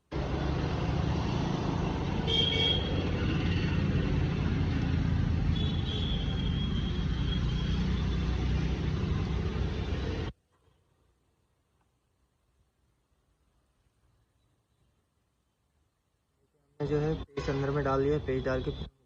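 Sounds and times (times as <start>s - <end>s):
road traffic noise: 0.0s - 10.7s, 16.5s - 19.0s.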